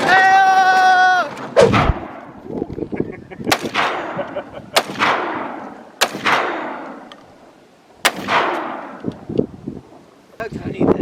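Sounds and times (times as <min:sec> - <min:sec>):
gunshots with echo: 0:01.6 - 0:02.3, 0:03.5 - 0:07.1, 0:08.0 - 0:09.0.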